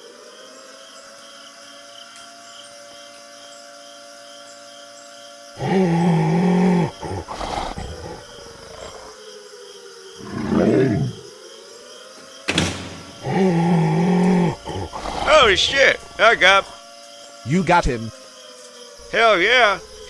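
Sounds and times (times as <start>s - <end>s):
monster roar: 5.6s - 9.1s, 10.2s - 11.2s, 12.7s - 16.7s
sweeping growl: 5.6s - 9.1s, 10.2s - 11.3s, 12.9s - 16.7s.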